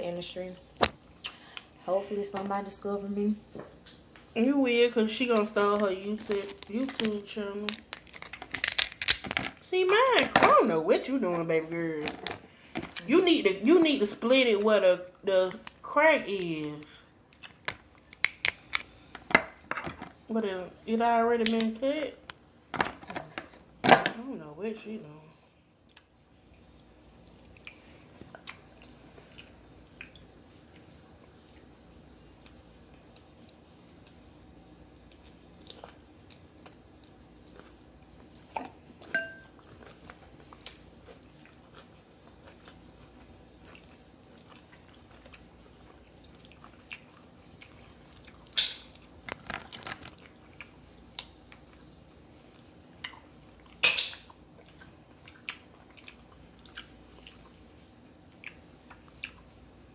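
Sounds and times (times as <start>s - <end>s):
shells cracking: 7.8s - 9.5s
person chewing: 25.8s - 31.8s, 35.0s - 51.9s, 52.5s - 57.7s, 58.3s - 59.5s.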